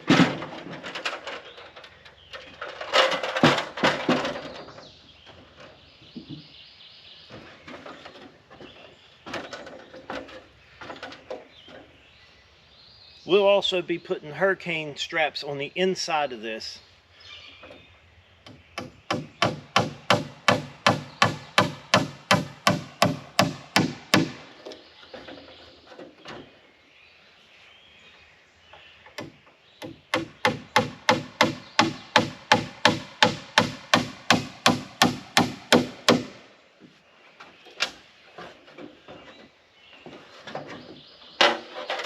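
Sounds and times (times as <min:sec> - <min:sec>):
hammer driving nails into wood: 0:18.8 - 0:24.4, 0:29.2 - 0:36.4.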